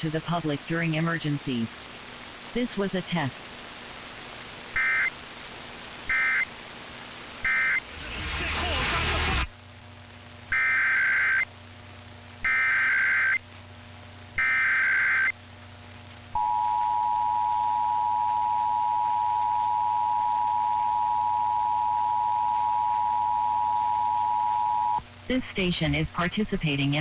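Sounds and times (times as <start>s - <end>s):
warbling data tones: 4.7s - 5.2s, 6.1s - 6.5s, 10.5s - 11.5s, 12.4s - 13.4s, 14.4s - 15.4s
two-tone attention signal: 16.4s - 25.0s.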